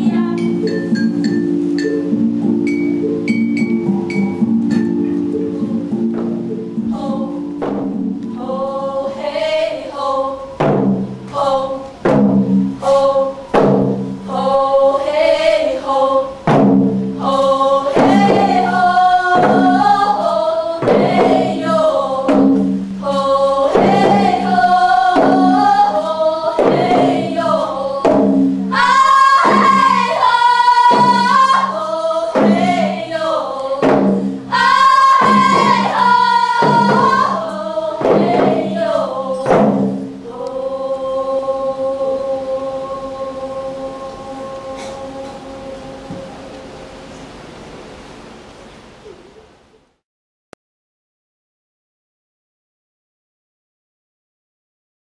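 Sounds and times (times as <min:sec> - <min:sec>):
percussion strikes: 0:00.0 - 0:09.2, 0:10.6 - 0:15.1, 0:16.4 - 0:33.2, 0:33.8 - 0:40.4
voices singing together: 0:00.0 - 0:47.4.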